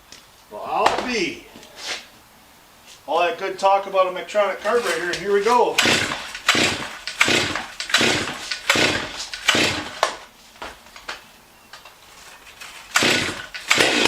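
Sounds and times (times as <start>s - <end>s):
chainsaw engine running: 4.6s - 10.2s, 12.6s - 14.0s
chainsaw recoil starter pulls: 4.6s - 10.2s, 12.4s - 14.0s.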